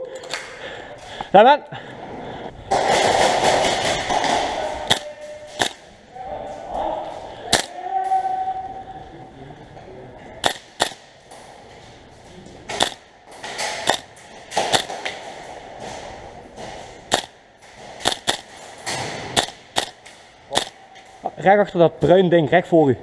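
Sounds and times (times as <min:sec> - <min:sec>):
airsoft gun shots: 0:02.8 - 0:05.9, 0:10.4 - 0:11.1, 0:13.6 - 0:15.0, 0:17.1 - 0:17.4, 0:18.0 - 0:20.8.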